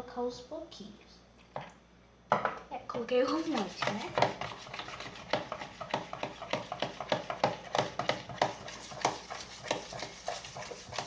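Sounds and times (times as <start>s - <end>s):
utensil stirring slime in a bowl: 2.8s - 11.0s.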